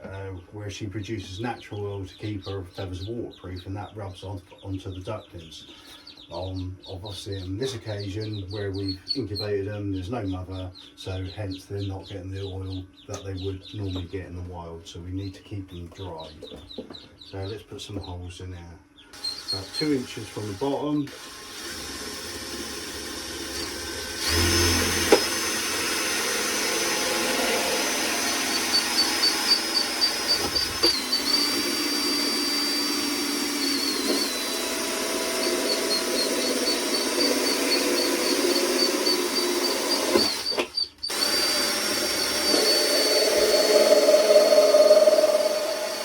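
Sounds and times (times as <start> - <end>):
electric drill boring plastic: 19.2 - 46.0.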